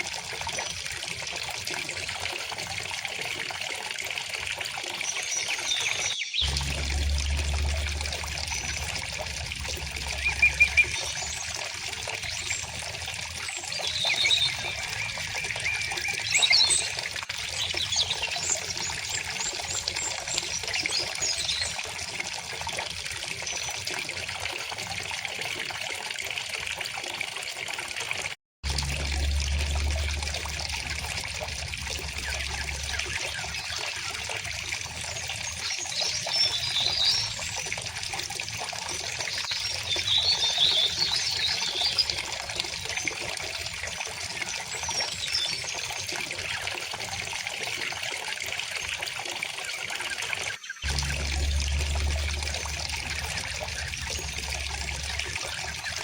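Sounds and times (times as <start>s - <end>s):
stream flowing: 0.0s - 56.0s
birds chirping and singing: 5.3s - 12.8s.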